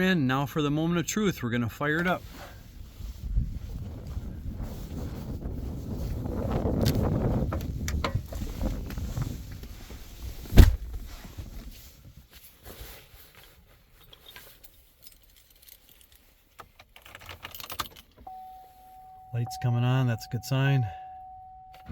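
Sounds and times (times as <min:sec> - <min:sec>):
rustling and handling noise: 0:06.8 - 0:19.3
truck panel slamming shut: 0:10.5 - 0:11.0.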